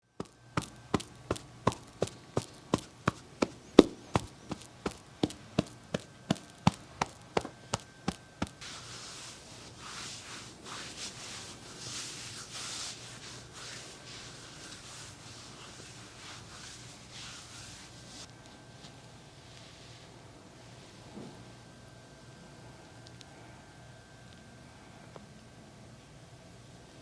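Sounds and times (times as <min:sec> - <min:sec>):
sharp taps: 0:00.2 - 0:08.6
soft rustling and swishing: 0:00.6 - 0:21.4.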